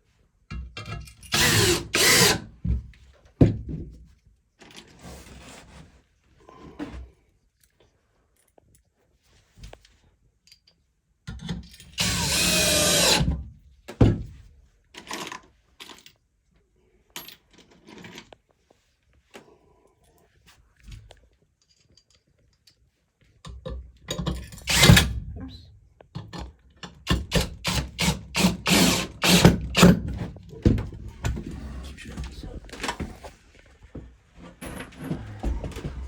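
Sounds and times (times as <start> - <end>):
power drill running: 1.3 - 2.4, 12.0 - 13.3, 24.6 - 25.2, 27.6 - 29.9.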